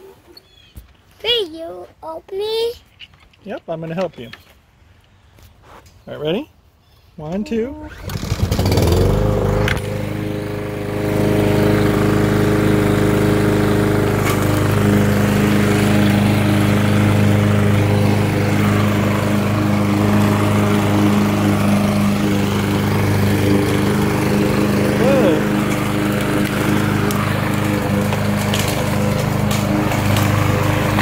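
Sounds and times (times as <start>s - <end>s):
lawn mower engine running: 7.7s - 31.0s.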